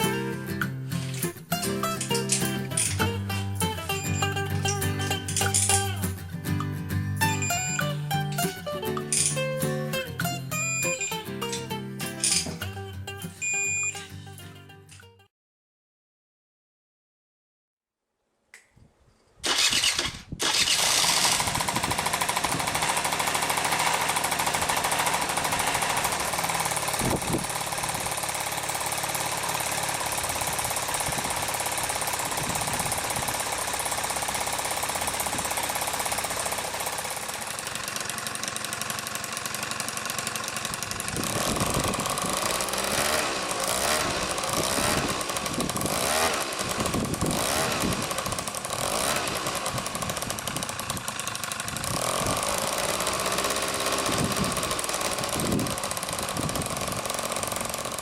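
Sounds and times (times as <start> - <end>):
scooter engine starting and running: 0.0 - 14.3, 19.4 - 58.0.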